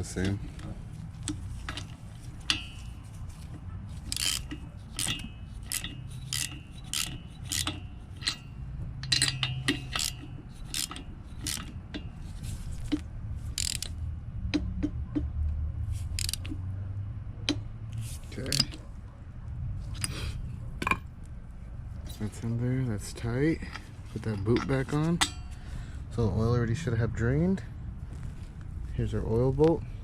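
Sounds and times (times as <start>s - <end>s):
socket ratchet clicking: 4.1s - 12.2s, 12.8s - 14.7s, 16.1s - 16.6s, 18.4s - 18.8s.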